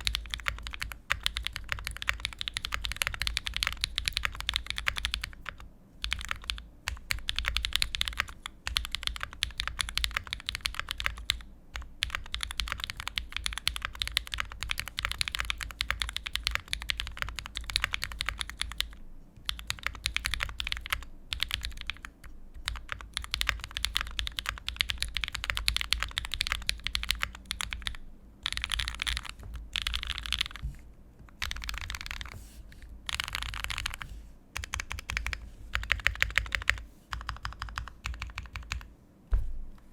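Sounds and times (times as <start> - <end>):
mechanical keyboard keystrokes clacking: 0.0 - 30.6, 31.2 - 32.3, 33.1 - 34.0, 34.6 - 38.9.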